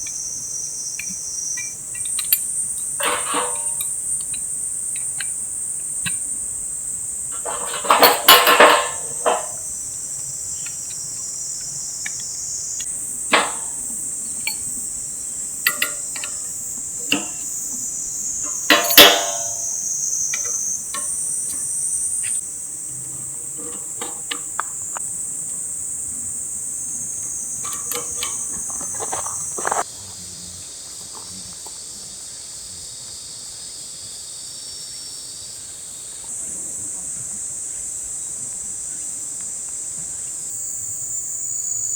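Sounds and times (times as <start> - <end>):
insects chorus: 0.0 - 41.9
knocks and clatters: 1.0 - 5.4, 7.3 - 9.8, 12.8 - 21.8.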